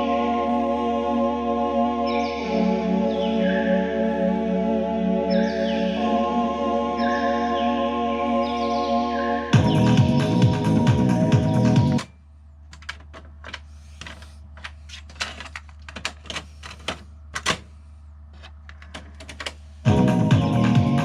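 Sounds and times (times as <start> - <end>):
music: 0.0 - 12.1, 19.9 - 21.0
steady low hum: 0.0 - 21.0.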